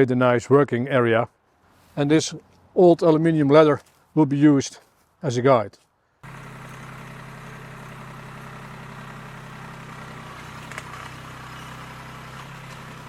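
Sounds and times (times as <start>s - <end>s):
engine idling: 6.2s - 13.0s.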